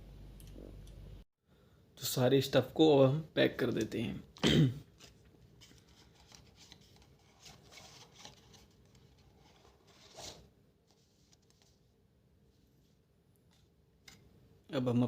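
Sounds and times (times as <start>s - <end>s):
papers rustling and light clicks: 4.9s - 11.8s.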